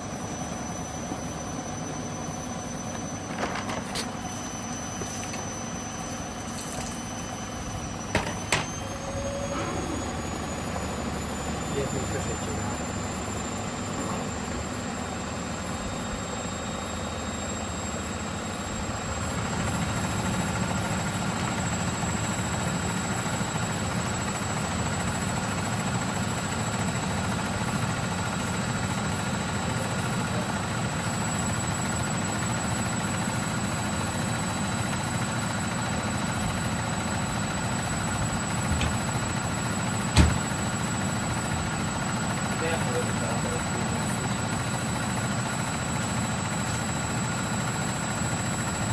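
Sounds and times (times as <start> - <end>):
washing machine spinning: 0.1 - 11.7, 34.1 - 42.5
sharp knock: 40.2 - 40.4.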